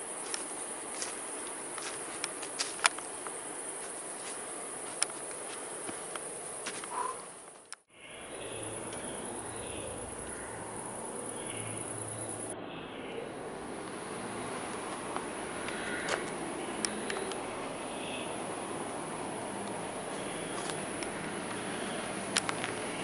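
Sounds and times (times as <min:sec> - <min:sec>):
faint distant sounds: 0:00.0 - 0:23.0
insects chirring: 0:00.0 - 0:23.0
sharp clicks: 0:01.7 - 0:03.4, 0:22.3 - 0:22.8.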